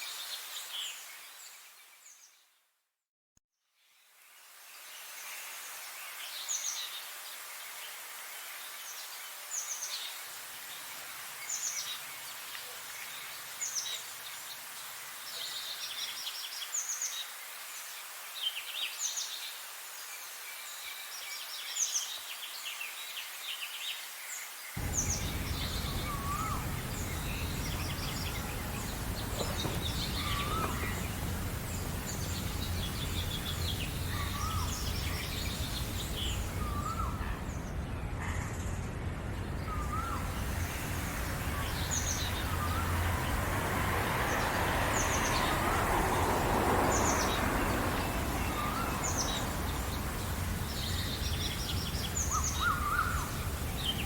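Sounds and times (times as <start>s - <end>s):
steady background hiss: 4.2s - 54.0s
songbirds chirping: 18.5s - 54.0s
low gliding bird calls: 24.8s - 43.7s, 46.9s - 54.0s.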